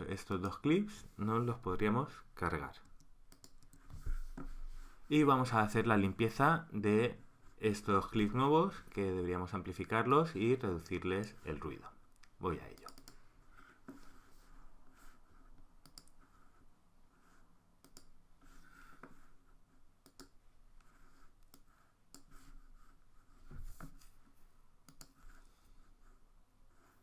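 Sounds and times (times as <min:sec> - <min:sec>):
computer mouse and keyboard clicks: 0:02.8 - 0:04.5, 0:12.6 - 0:13.2, 0:15.8 - 0:16.2, 0:17.8 - 0:18.2, 0:20.0 - 0:20.4, 0:21.4 - 0:22.4, 0:24.8 - 0:25.3.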